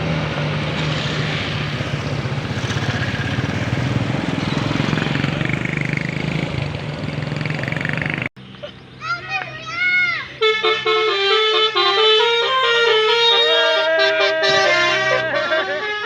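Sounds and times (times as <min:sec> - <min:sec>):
vehicle engine running: 0:00.0 - 0:08.3
road noise: 0:00.0 - 0:16.0.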